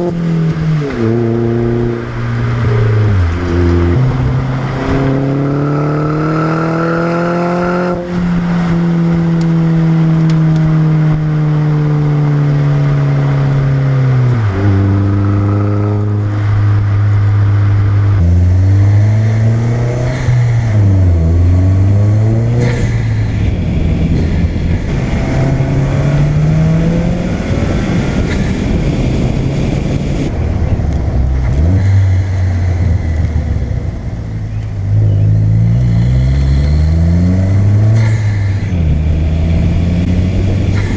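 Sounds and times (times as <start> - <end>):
car engine revving: 0.0 - 40.9.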